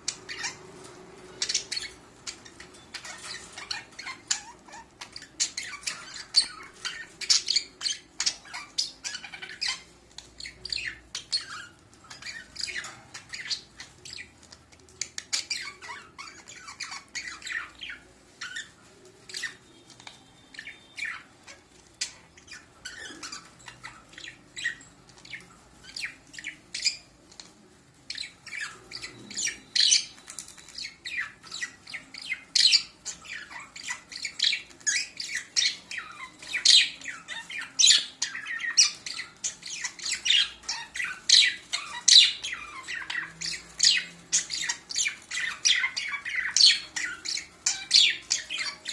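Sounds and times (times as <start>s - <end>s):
budgerigars chattering: 0.0s - 14.4s, 28.1s - 48.9s.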